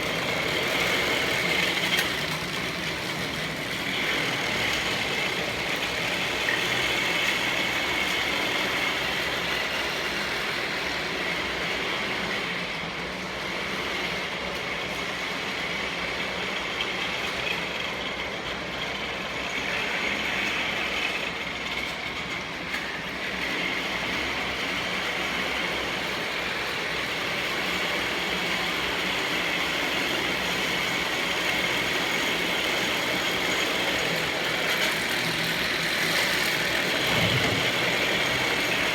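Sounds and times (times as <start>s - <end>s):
machine humming: 36.9s - 38.7s.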